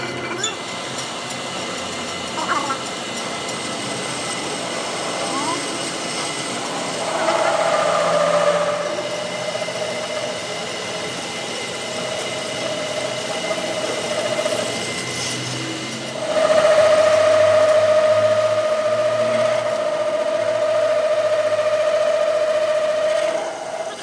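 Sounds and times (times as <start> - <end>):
machine tool whining: 0.0 - 24.0.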